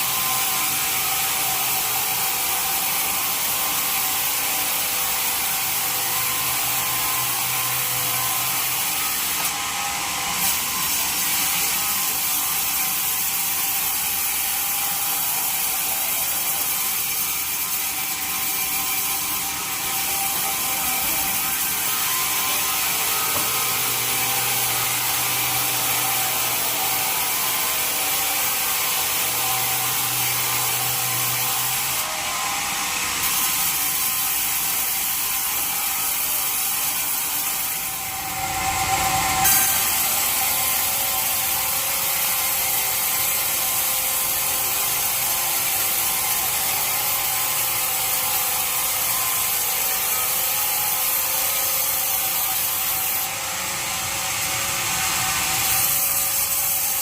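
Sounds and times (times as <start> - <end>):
bandsaw cutting wood: 0.0 - 57.0.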